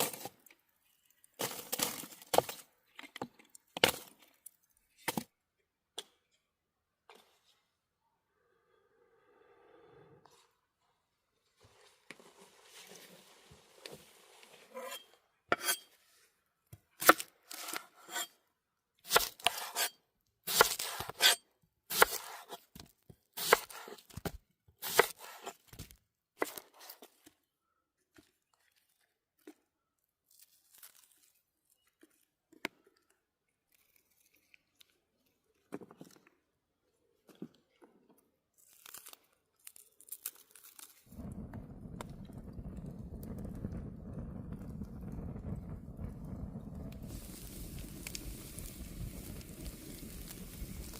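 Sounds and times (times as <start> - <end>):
food wrapping being torn: 30.2 - 32.3, 33.6 - 35.6, 38.5 - 41.1.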